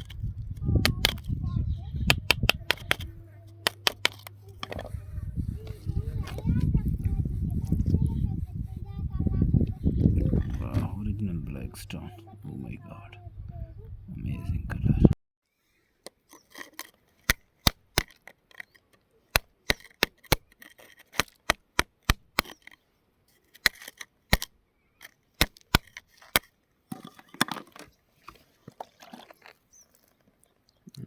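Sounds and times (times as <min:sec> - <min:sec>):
scraping and handling: 0:00.0 - 0:09.0, 0:09.6 - 0:13.2, 0:16.0 - 0:19.0, 0:19.7 - 0:21.5, 0:25.0 - 0:30.6
stone tapping and knocking: 0:02.1 - 0:03.0.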